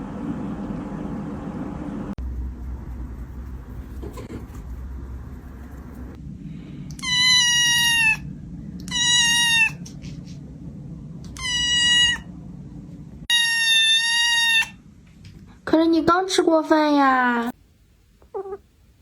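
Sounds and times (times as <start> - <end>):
kitten meowing: 6.9 - 8.2, 8.8 - 9.9, 11.3 - 12.3, 13.3 - 14.8, 18.2 - 18.6.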